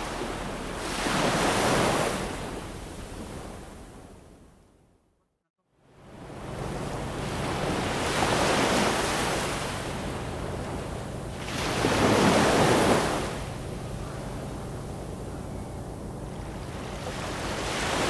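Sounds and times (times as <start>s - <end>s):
ocean waves surging: 0.0s - 3.6s, 6.1s - 18.0s
faint low hum: 9.6s - 18.0s.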